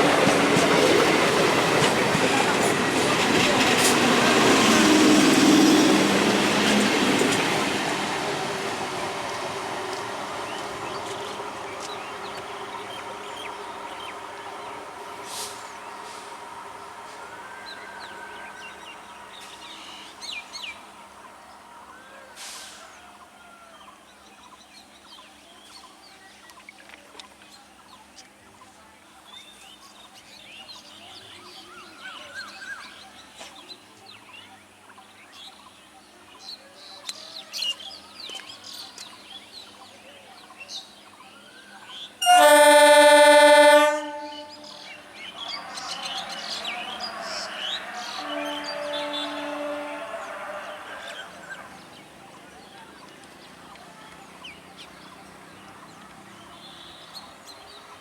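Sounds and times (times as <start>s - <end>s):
rush of train noise: 0.0s - 23.5s, 41.8s - 58.0s
train air horn blast: 15.1s - 16.5s, 42.2s - 45.2s, 45.9s - 51.5s
birds chirping: 40.9s - 58.0s.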